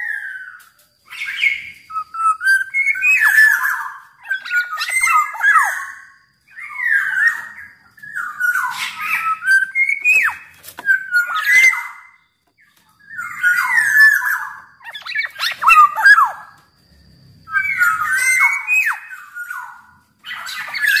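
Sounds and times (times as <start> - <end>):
oriole singing fluty whistles: 0.0 - 12.2, 13.1 - 16.6.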